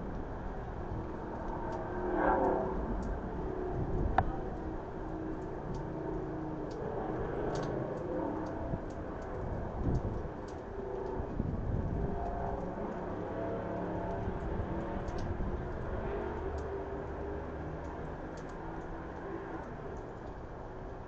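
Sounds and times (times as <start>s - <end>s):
storm wind rumbling: 0.0s - 21.0s
faint ticks: 1.4s - 3.2s, 6.6s - 21.0s.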